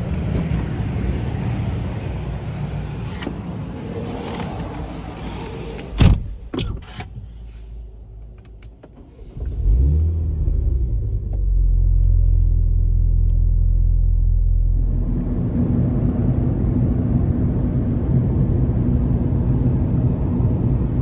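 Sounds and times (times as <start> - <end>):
car engine starting and idling: 0.0 - 21.0
car doors shutting: 3.0 - 7.4.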